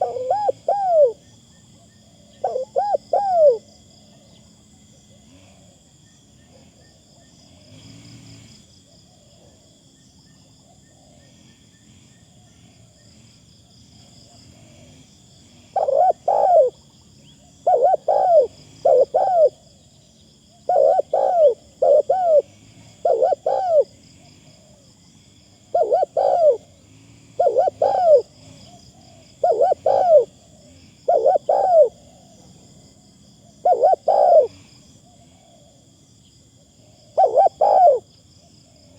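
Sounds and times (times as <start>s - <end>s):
dove cooing: 0.0s - 1.3s, 2.1s - 4.4s, 15.7s - 19.7s, 20.5s - 26.8s, 27.4s - 32.7s, 33.4s - 35.8s, 36.6s - 38.9s.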